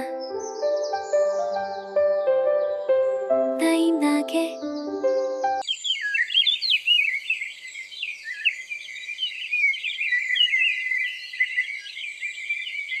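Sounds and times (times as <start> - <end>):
musical phrase: 0.0 - 5.6
small birds chirping: 0.0 - 13.0.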